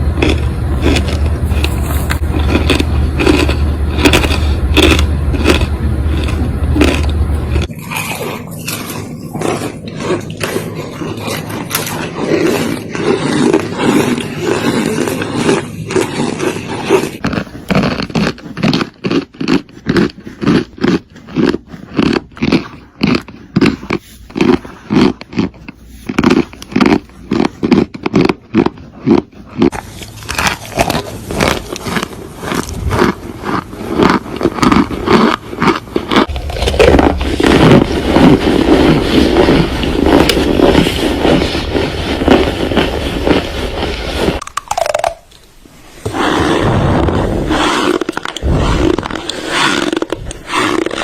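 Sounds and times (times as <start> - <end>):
mouth crunching food: 0.0 - 51.0.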